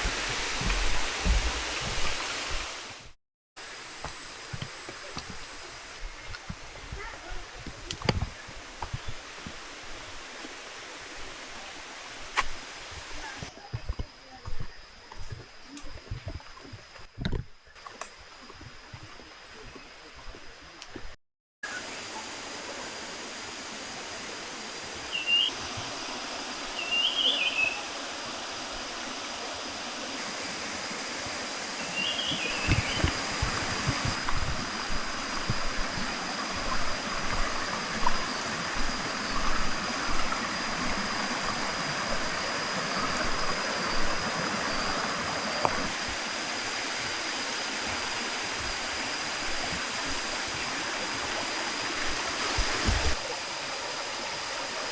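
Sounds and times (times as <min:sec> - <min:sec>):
waterfall rushing: 0:00.0 - 0:03.1, 0:21.7 - 0:54.9.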